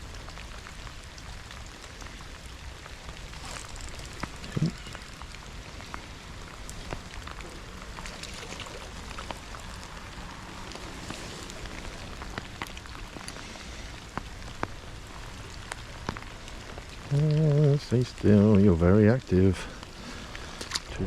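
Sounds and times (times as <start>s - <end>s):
raindrops ticking close by: 0.0s - 21.0s
steady rain hiss: 0.0s - 21.0s.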